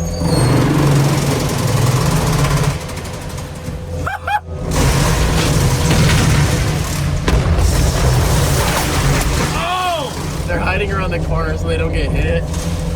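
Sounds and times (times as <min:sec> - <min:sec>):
short rising squeals: 0:00.0 - 0:01.6
loader engine running hard: 0:00.0 - 0:09.0
metal crunching and scraping: 0:00.2 - 0:12.9.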